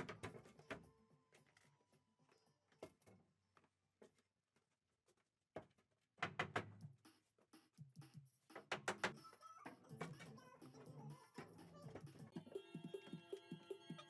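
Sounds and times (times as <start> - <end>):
knocks and clicks: 8.5 - 9.2.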